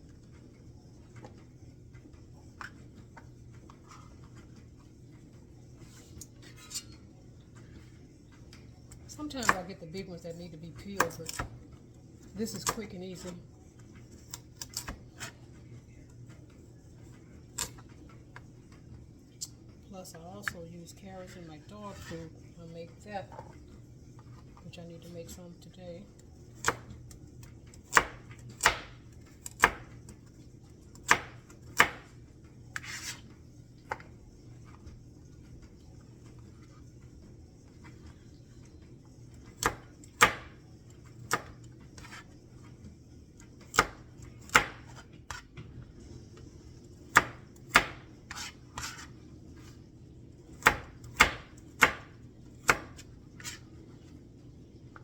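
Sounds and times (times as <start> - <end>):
knife chopping on cutting board: 26.6 - 27.0, 27.8 - 30.0, 31.0 - 32.1, 32.8 - 33.2, 39.6 - 40.6, 41.2 - 42.3, 43.6 - 45.4, 47.1 - 49.1, 50.6 - 53.6.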